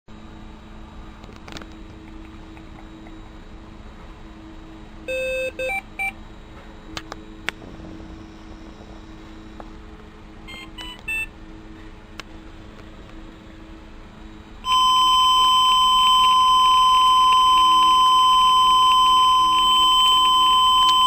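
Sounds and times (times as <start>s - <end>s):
steady low hum: 0.1s - 21.0s
short alarm beeps: 5.1s - 6.2s, 14.6s - 21.0s.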